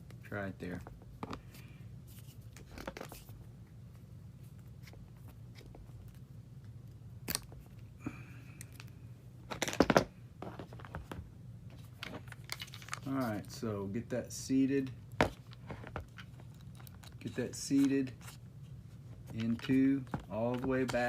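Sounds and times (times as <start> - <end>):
handling clicks and knocks: 19.2 - 21.0.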